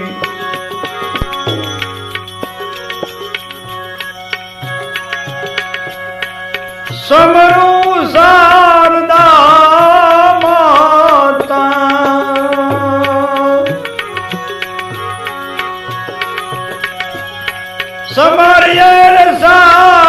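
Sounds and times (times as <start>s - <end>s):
loud wavering melody: 0.0s - 20.0s
tabla rhythm: 0.0s - 20.0s.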